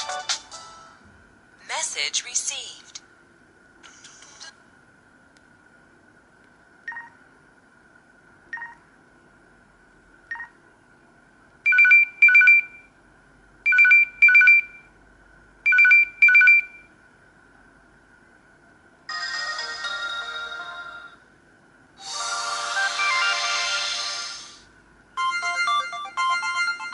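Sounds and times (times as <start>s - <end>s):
electronic phone ringtone: 11.7s - 12.8s, 13.7s - 14.7s, 15.7s - 16.8s, 19.1s - 21.2s, 22.0s - 23.9s, 25.2s - 26.9s.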